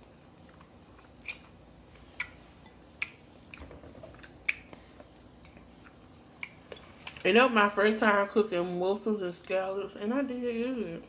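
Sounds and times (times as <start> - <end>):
eating clicks and smacks: 0.4 - 7.2.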